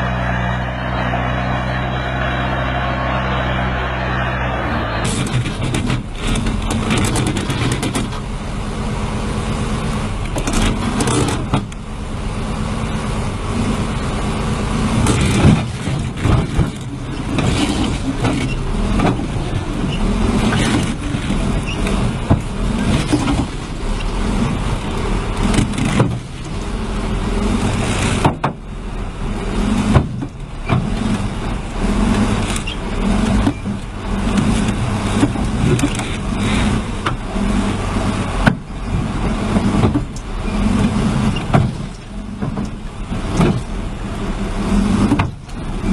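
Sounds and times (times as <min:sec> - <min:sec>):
diesel engine running: 0:00.0 - 0:45.9
knocks and clatter: 0:05.0 - 0:08.2, 0:27.8 - 0:28.6, 0:38.4 - 0:43.8, 0:44.9 - 0:45.7.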